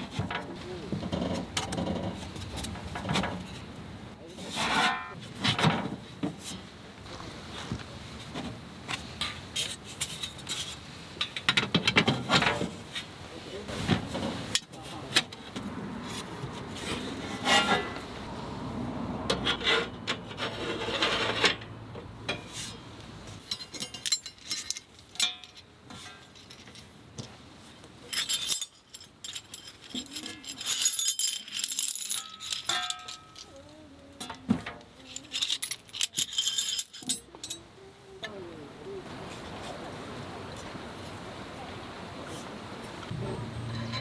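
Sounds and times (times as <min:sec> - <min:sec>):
rubbing and scraping: 0:04.4 - 0:05.7, 0:16.0 - 0:18.3, 0:19.4 - 0:21.7.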